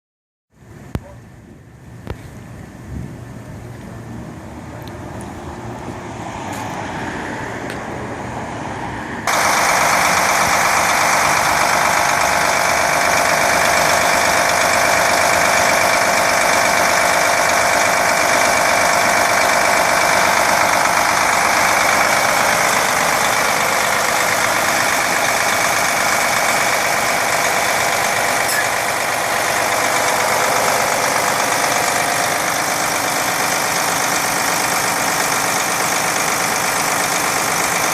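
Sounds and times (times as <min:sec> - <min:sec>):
steady whine: 0:09.3 - 0:36.4
diesel engine idling: 0:09.3 - 0:37.9.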